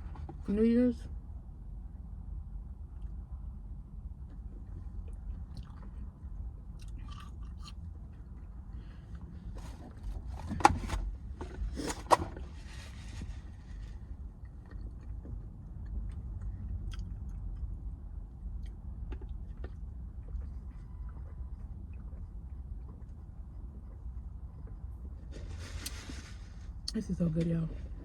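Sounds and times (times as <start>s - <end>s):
low steady hum: 0.0s - 28.0s
chewing and biting food: 4.9s - 9.2s, 14.3s - 24.8s.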